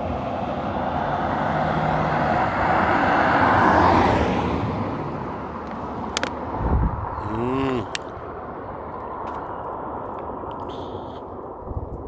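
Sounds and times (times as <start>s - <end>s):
vehicle passing by: 0.0s - 6.1s.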